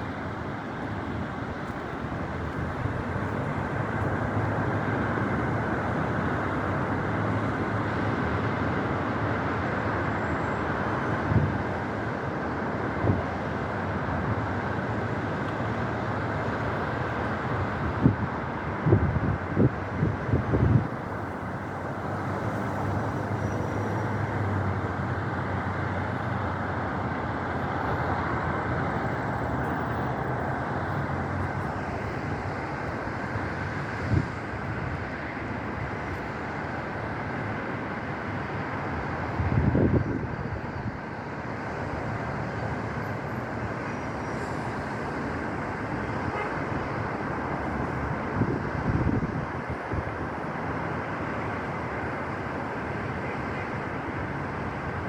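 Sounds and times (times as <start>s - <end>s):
highway traffic rushing: 0.0s - 55.0s
wind buffeting microphone: 48.4s - 50.2s.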